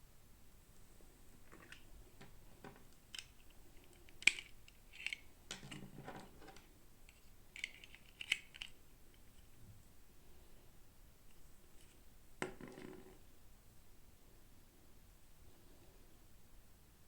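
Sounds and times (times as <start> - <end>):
plastic pieces clicking: 1.5 - 9.3.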